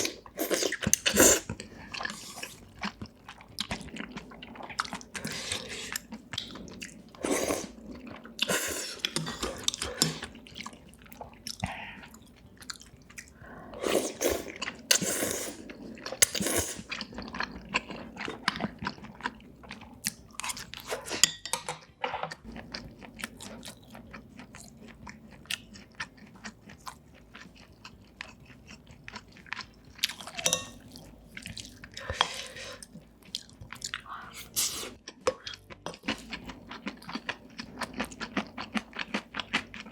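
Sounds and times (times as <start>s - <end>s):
food crunching: 22.4s - 39.9s.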